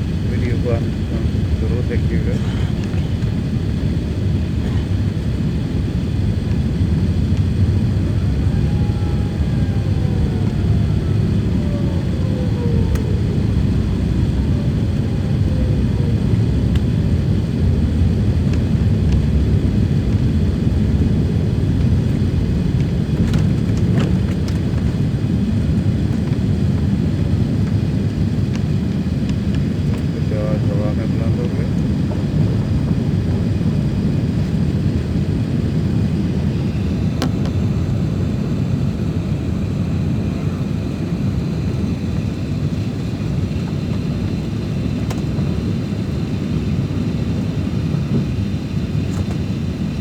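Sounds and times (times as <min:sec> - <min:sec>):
jet engines rumbling in cabin: 0:00.0 - 0:50.0
faint falling engine whine: 0:05.2 - 0:50.0.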